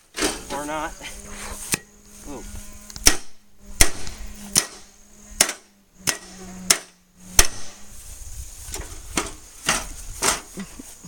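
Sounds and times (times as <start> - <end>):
bat striking metal microwave: 3.0 - 7.8.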